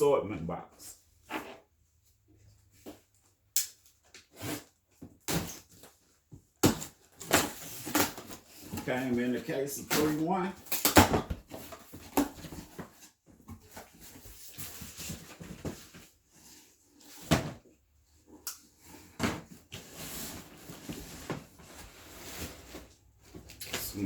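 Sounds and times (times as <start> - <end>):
cardboard rustling: 4.2 - 17.7.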